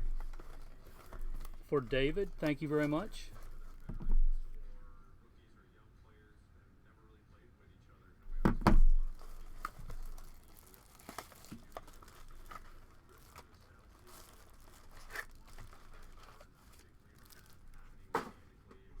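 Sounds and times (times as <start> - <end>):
plastic wrapping tearing and crinkling: 0.0 - 4.6, 8.9 - 18.2.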